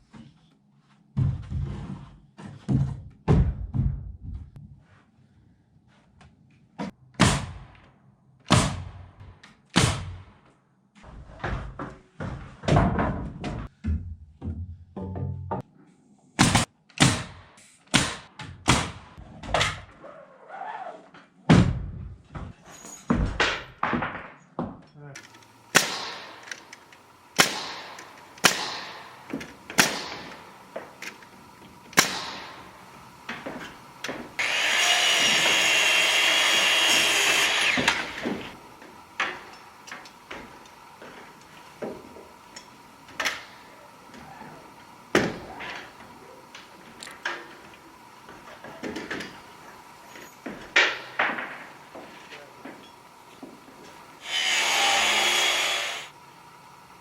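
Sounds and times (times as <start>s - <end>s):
power tool running: 25.2s - 57.0s.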